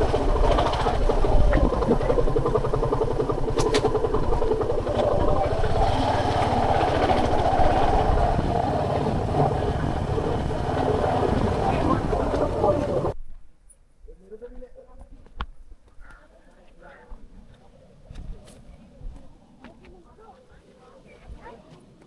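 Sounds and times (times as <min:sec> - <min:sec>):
motorcycle engine running: 0:00.0 - 0:13.2.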